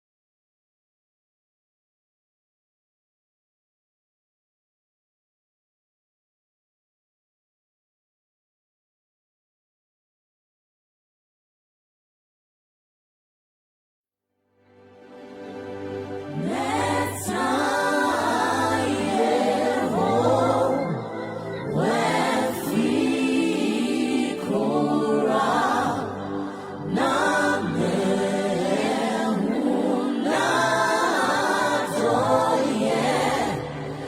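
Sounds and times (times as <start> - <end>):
choir singing worship song: 15.0 - 34.0.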